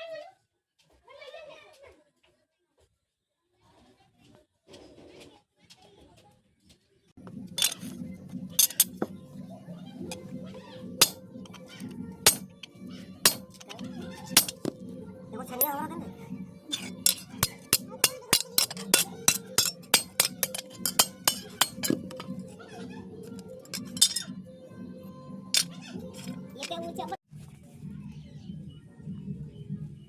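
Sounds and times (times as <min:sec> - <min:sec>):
hammer striking metal on anvil: 0:08.6 - 0:09.2, 0:11.0 - 0:14.8, 0:16.7 - 0:22.4, 0:25.6 - 0:26.4.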